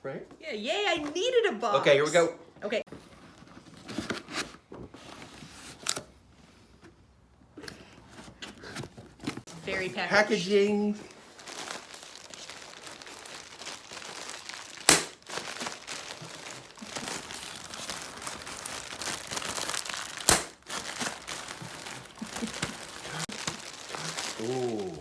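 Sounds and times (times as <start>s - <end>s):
packing material crinkling: 9.4s - 25.0s.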